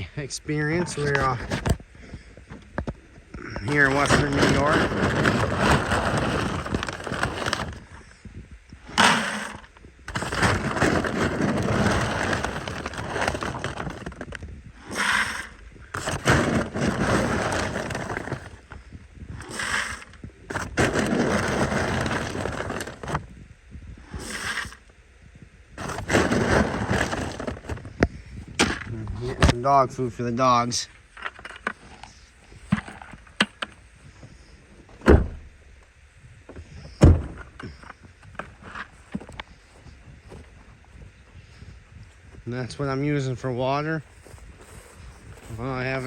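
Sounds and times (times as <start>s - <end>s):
dry dog food rustling: 3.7s - 7.8s, 9.0s - 14.3s, 15.0s - 18.6s, 19.4s - 23.2s, 25.8s - 27.9s.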